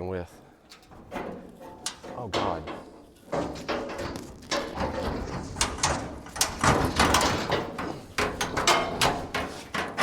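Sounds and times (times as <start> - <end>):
sheet metal clanking and scraping: 0.6 - 10.0.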